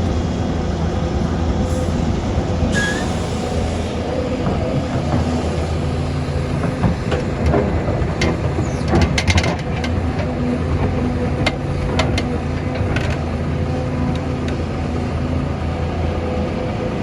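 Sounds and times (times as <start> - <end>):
excavator diesel engine running: 0.0 - 17.0
machine clanks and knocks: 6.5 - 13.3.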